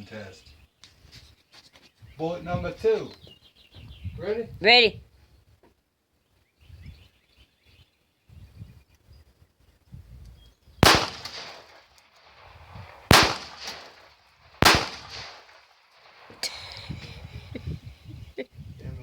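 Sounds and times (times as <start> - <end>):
pistol shots: 10.8 - 16.5.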